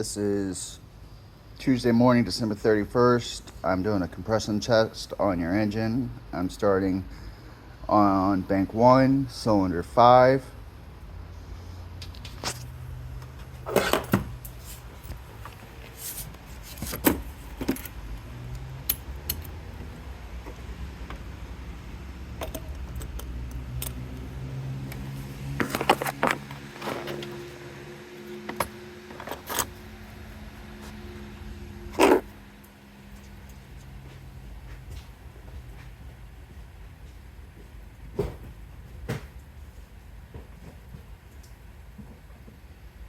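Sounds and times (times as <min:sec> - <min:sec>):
metal tools clinking and rattling: 0:13.6 - 0:14.3, 0:22.4 - 0:24.0.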